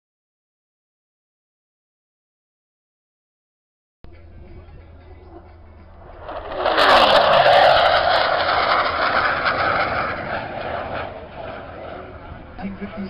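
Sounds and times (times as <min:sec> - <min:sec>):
aircraft passing low and fast: 0:04.1 - 0:13.0.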